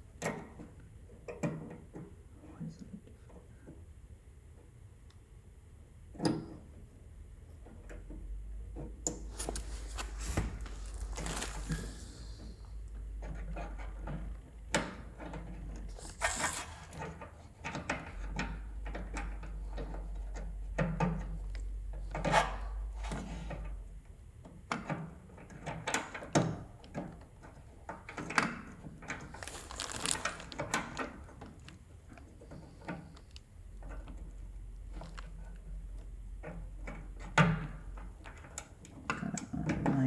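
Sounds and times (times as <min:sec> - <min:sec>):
short scraping rustles: 0:16.0 - 0:17.0.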